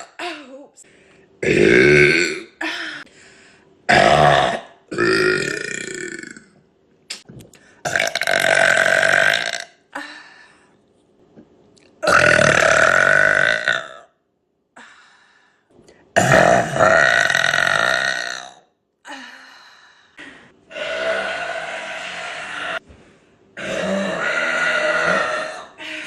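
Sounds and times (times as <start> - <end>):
woman burping: 1.4 - 2.7, 3.9 - 6.4, 16.2 - 18.6, 23.6 - 25.8.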